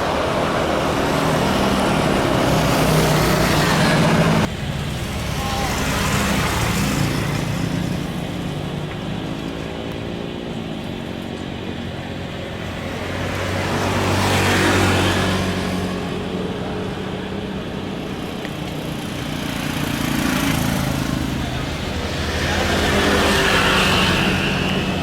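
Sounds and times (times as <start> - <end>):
passing vehicles engine noise: 0.0 - 25.0.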